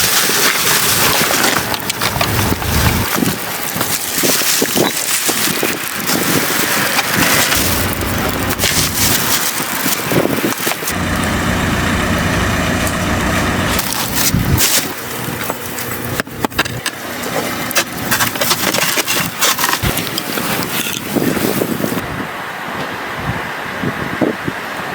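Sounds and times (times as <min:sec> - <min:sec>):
clatter of things handled: 0:00.0 - 0:11.0, 0:13.8 - 0:21.8
wind buffeting microphone: 0:00.0 - 0:18.1, 0:19.1 - 0:24.9
engine-like hum: 0:00.0 - 0:20.4.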